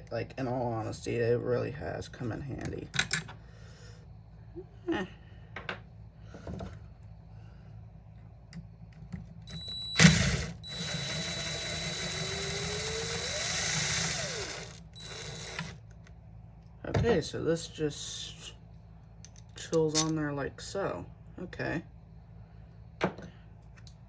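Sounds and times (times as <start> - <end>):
mechanical whirring with high whine: 9.5 - 15.8.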